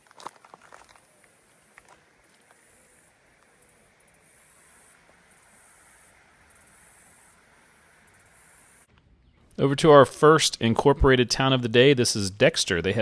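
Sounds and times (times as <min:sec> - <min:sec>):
low outdoor background: 0:00.0 - 0:13.0.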